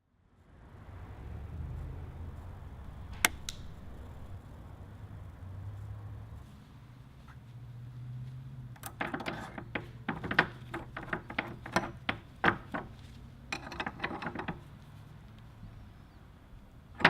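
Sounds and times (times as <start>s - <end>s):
sharp clicks and knocks: 8.8s - 14.8s.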